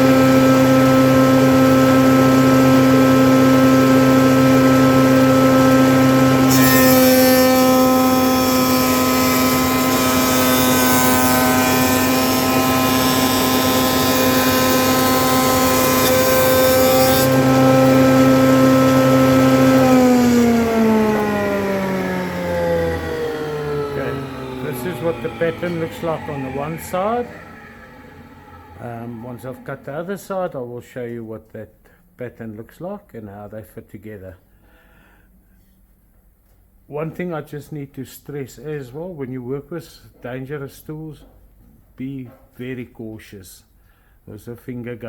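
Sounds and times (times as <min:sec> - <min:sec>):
cutter head cutting wood: 0:00.0 - 0:30.2
woodworking machine spinning down: 0:00.0 - 0:30.5.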